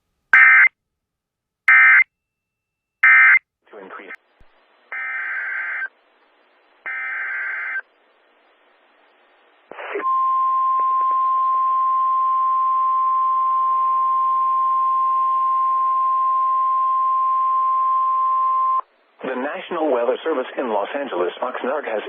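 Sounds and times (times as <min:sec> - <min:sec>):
faint radio hiss: 0:03.6 - 0:10.1, 0:18.8 - 0:22.0.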